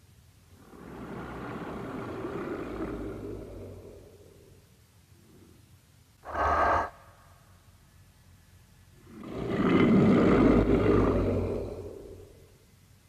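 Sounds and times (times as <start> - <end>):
monster roar: 9.1 - 12.3.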